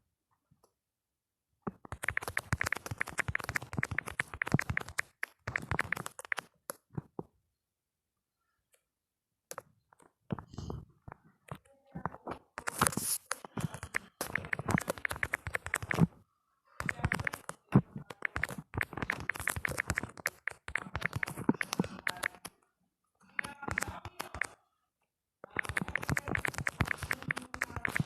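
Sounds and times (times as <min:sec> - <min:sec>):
phone keyboard key clicks: 0:01.9 - 0:06.4, 0:13.6 - 0:16.0, 0:18.1 - 0:22.5, 0:23.4 - 0:24.5, 0:25.5 - 0:28.0.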